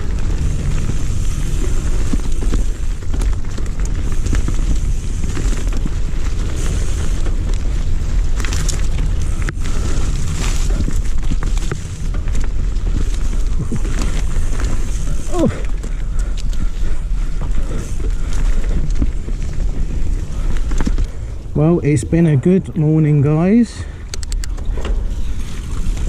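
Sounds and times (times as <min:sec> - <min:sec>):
bike clicks and rattles: 0:00.0 - 0:22.0, 0:22.7 - 0:26.0
bike tyres rumbling on dirt: 0:00.0 - 0:26.0
wind buffeting microphone: 0:00.0 - 0:26.0.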